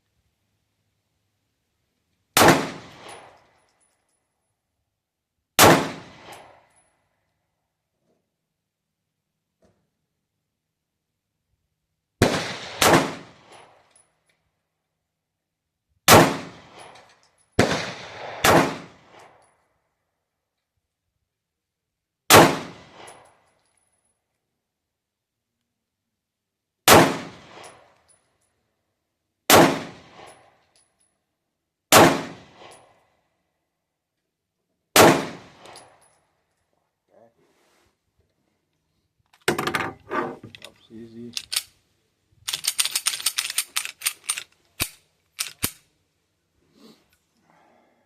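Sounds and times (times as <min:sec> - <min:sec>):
single gunshots: 0:02.4 - 0:03.3, 0:05.6 - 0:06.4, 0:12.2 - 0:13.5, 0:16.1 - 0:16.8, 0:17.6 - 0:19.2, 0:22.3 - 0:23.1, 0:26.9 - 0:27.7, 0:29.5 - 0:30.3, 0:31.9 - 0:32.7, 0:35.0 - 0:35.8.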